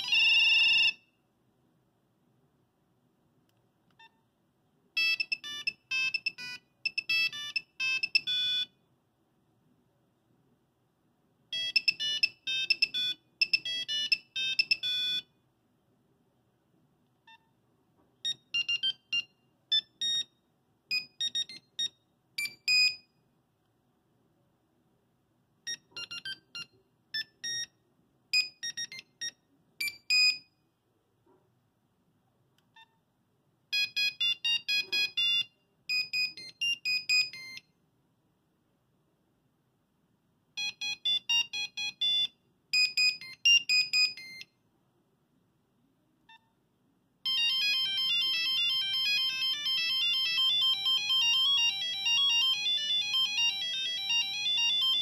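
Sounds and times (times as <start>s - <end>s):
monophonic ringtone melodies: 0.0s - 1.0s, 5.0s - 8.7s, 11.6s - 15.2s, 33.8s - 37.6s, 40.6s - 44.4s, 47.3s - 55.0s.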